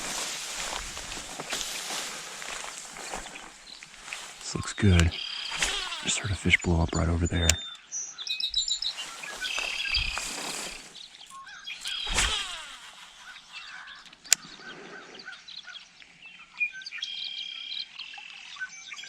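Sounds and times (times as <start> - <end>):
songbirds chirping and singing: 0.0 - 19.0
sharp click: 2.5 - 6.6, 11.8 - 13.4.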